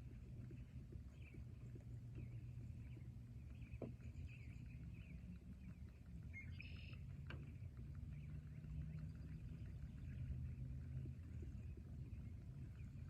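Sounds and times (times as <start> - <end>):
low steady rumble: 0.0 - 13.0
bird chirps: 6.2 - 7.0.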